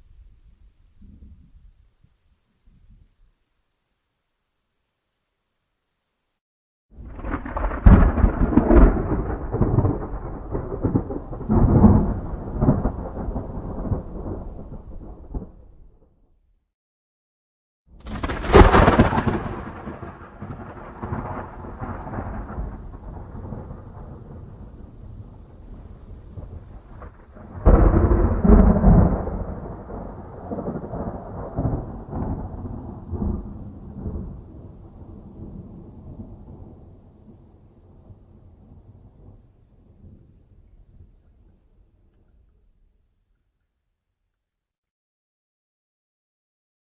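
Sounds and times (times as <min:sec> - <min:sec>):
thunder cracks: 0:07.0 - 0:16.0, 0:18.0 - 0:41.2
thunder rolling rumble: 0:07.0 - 0:16.0, 0:18.0 - 0:42.2.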